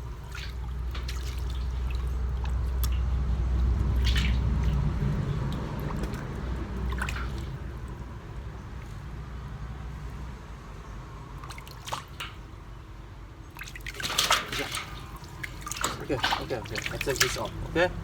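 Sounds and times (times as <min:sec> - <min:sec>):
steady low rumble: 0:00.0 - 0:11.6
water splashing and dripping: 0:00.0 - 0:18.0.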